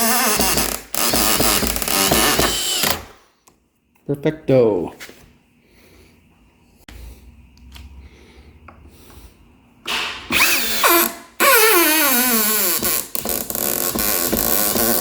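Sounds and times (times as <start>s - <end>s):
power drill driving screw: 0.0s - 3.2s, 10.3s - 15.0s.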